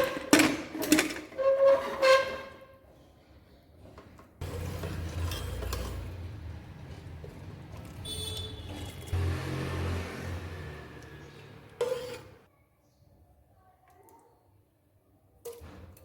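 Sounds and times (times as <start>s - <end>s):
kitchen utensils clinking: 0.0s - 2.5s, 4.4s - 9.2s.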